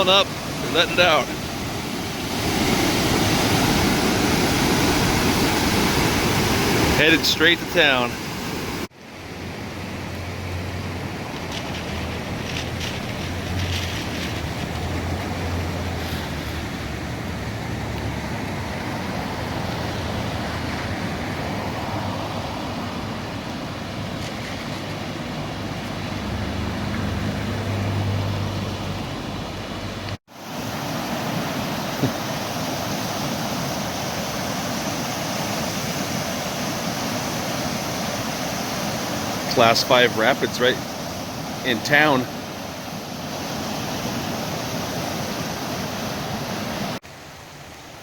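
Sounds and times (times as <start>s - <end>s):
river rushing in rapids: 0.0s - 24.2s, 24.9s - 48.0s
car engine and road noise: 0.0s - 32.7s.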